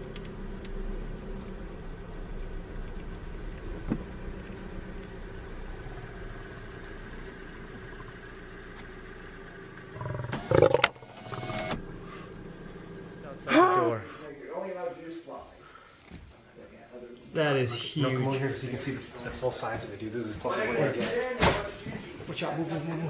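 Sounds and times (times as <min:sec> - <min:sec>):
low engine hum: 0:00.0 - 0:13.9
animal roar: 0:09.9 - 0:11.4.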